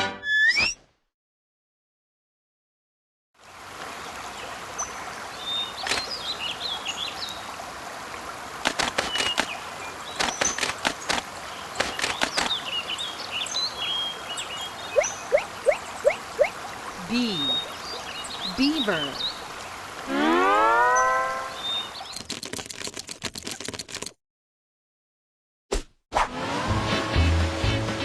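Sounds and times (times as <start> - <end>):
sharp clicks: 8.6 - 9.6, 10.2 - 11.2, 11.8 - 12.6
birds chirping: 8.9 - 22.4.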